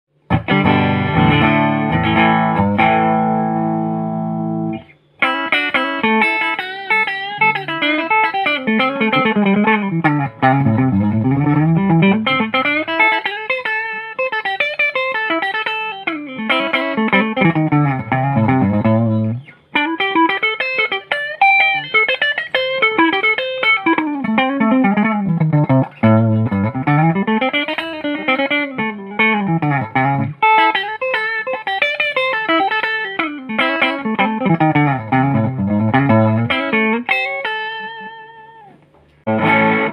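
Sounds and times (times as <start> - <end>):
electric guitar strummed chord: 0.3 - 14.2, 39.3 - 39.9
electric guitar picked runs: 0.3 - 39.9.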